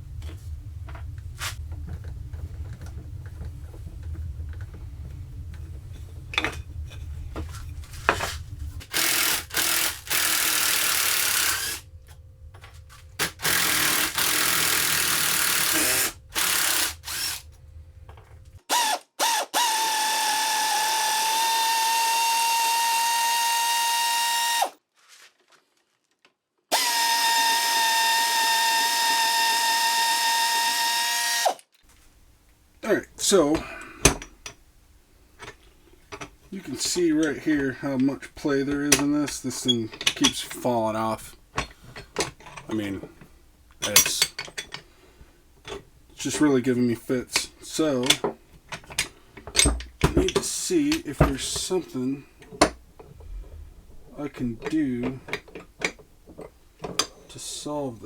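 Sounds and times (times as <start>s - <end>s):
power drill whining: 8.1s - 24.8s, 26.7s - 32.3s.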